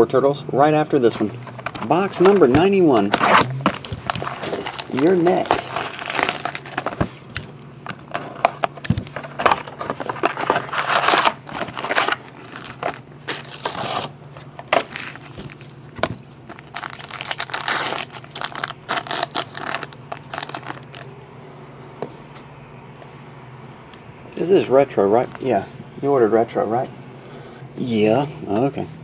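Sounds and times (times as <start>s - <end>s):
faint steady hum: 0.0s - 29.0s
crinkling and rustling: 1.0s - 21.1s
cardboard and foil packs tearing: 1.2s - 7.2s, 7.9s - 15.8s, 16.4s - 21.1s.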